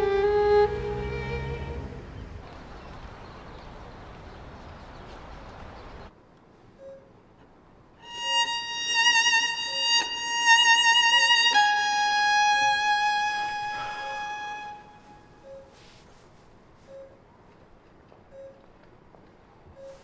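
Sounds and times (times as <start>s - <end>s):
solo violin playing slow music: 0.0s - 2.2s, 8.0s - 15.3s.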